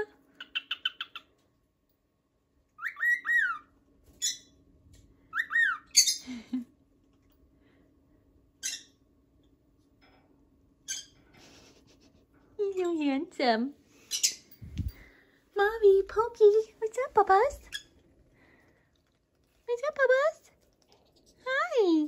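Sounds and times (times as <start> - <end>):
pet bird chirping and calling: 0.3 - 1.4, 2.8 - 4.6, 5.3 - 6.2, 8.6 - 9.0, 10.9 - 11.2, 14.0 - 14.5, 17.5 - 18.0.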